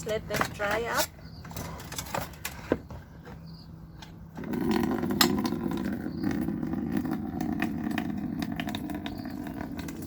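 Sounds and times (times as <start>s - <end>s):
water pouring into a bucket: 4.5s - 10.0s.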